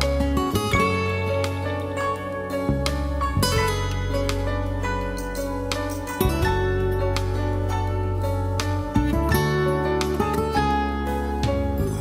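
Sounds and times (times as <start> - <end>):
plucked acoustic guitar: 0.0 - 12.0.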